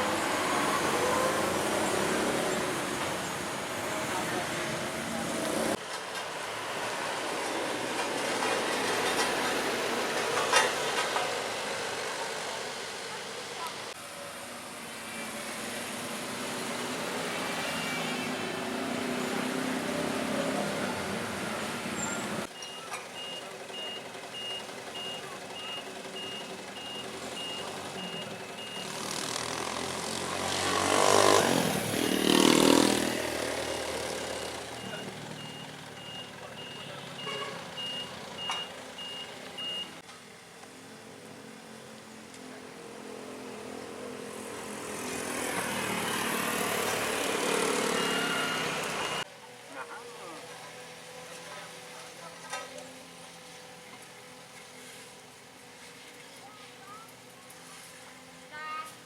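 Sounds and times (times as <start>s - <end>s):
engines running: 0.0s - 59.0s
reversing alarm beeping: 22.0s - 29.0s, 34.7s - 39.9s, 47.9s - 49.2s
vehicle passing close: 27.2s - 36.0s, 42.8s - 49.2s.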